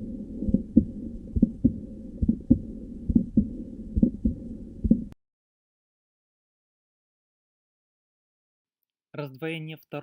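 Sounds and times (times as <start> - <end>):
heartbeat thumps: 0.0 - 5.2
low hum: 0.0 - 5.2.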